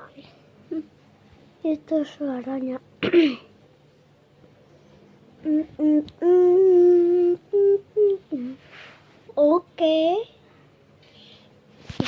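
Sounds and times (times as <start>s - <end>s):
person humming: 5.4s - 8.6s.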